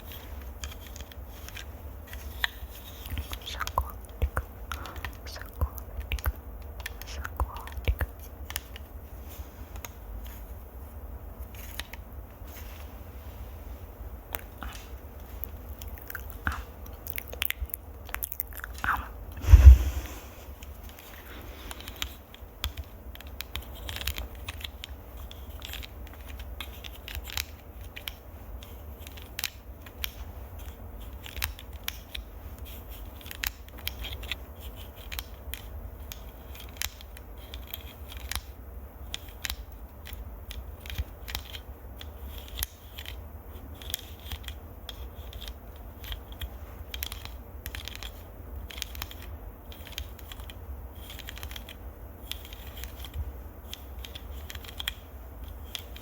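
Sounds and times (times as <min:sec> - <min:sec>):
low steady hum: 0:00.0 - 0:56.0
fingernails scratching a microphone: 0:19.4 - 0:20.4.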